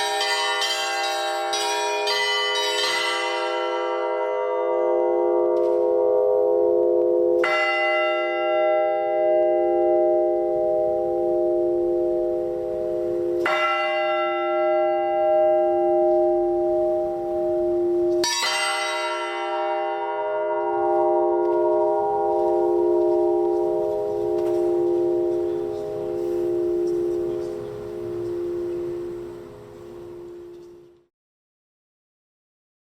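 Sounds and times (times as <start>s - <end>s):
church bells ringing: 0.0s - 31.0s.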